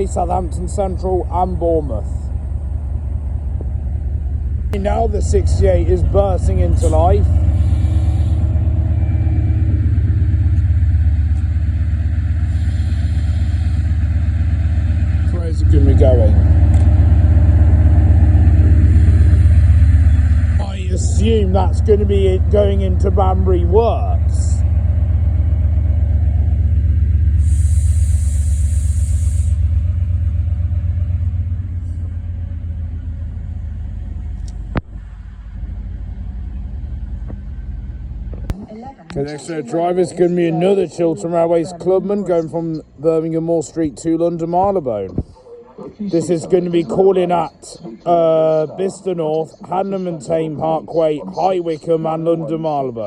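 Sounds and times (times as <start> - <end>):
diesel locomotive engine rumbling: 0.0 - 53.0
burst of hiss: 6.8 - 8.5, 12.5 - 14.0, 27.4 - 29.6.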